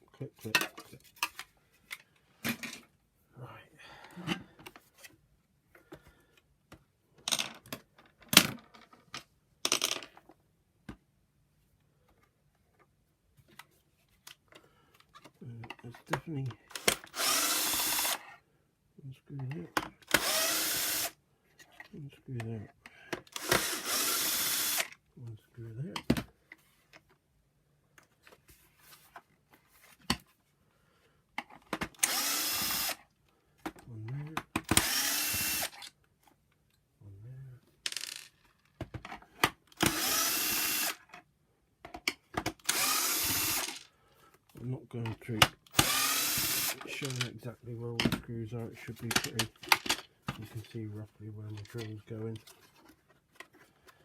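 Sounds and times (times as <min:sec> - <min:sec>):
hard plastic parts clattering: 0:00.4 - 0:02.9, 0:07.2 - 0:10.4, 0:37.8 - 0:41.2, 0:41.8 - 0:47.4, 0:48.0 - 0:54.0
power drill driving screw: 0:16.7 - 0:18.4, 0:20.0 - 0:21.2, 0:23.3 - 0:25.0, 0:31.9 - 0:33.0, 0:34.6 - 0:35.9, 0:39.8 - 0:41.1, 0:42.6 - 0:43.9, 0:45.7 - 0:47.2.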